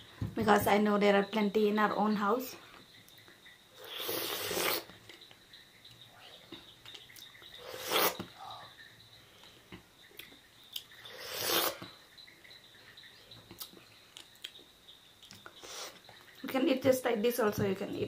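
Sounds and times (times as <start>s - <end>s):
mouth clicks and smacks: 6.5s - 8.4s, 9.7s - 11.9s, 13.5s - 16.2s.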